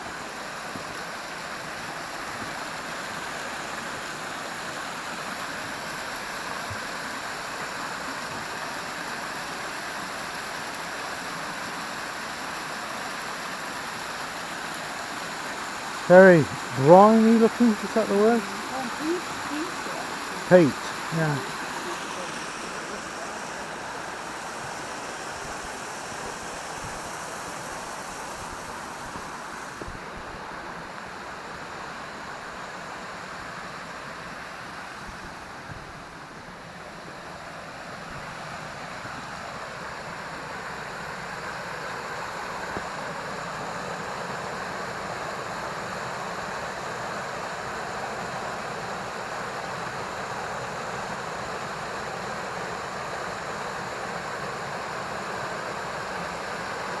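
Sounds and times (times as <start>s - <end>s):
waterfall rushing: 0.0s - 57.0s.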